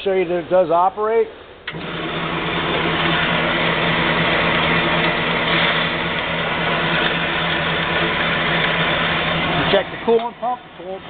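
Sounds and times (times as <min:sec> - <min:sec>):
band saw running: 0:01.7 - 0:11.0.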